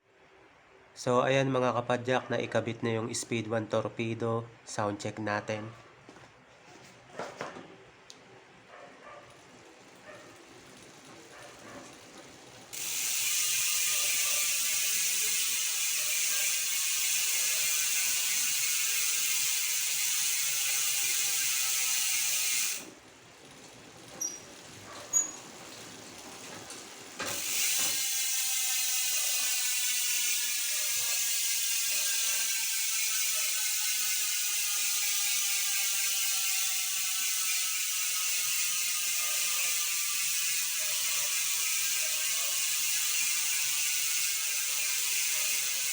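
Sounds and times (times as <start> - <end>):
bicycle hub freewheel clicking buzz: 9.3 - 45.9.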